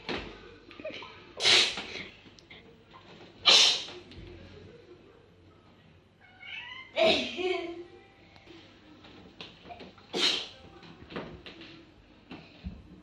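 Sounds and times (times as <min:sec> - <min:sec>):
person sneezing: 0:01.4 - 0:02.0, 0:03.4 - 0:03.9, 0:10.1 - 0:10.6.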